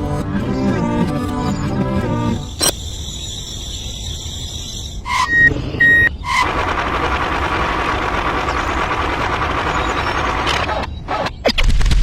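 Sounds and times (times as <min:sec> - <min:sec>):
steady mechanical hum: 0:02.5 - 0:11.4
short electronic beeps: 0:05.0 - 0:06.4.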